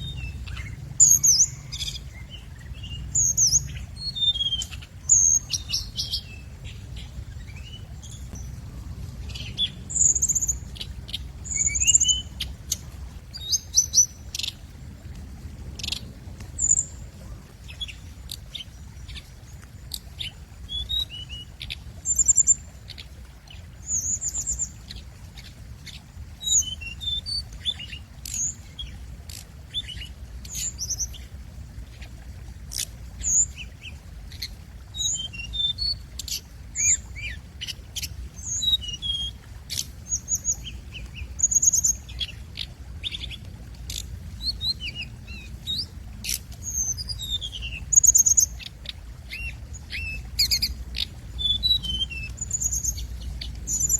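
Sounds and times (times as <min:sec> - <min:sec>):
songbird chirping and trilling: 0:00.0 - 0:14.6, 0:32.7 - 0:53.9
faint low rumble: 0:00.0 - 0:20.4.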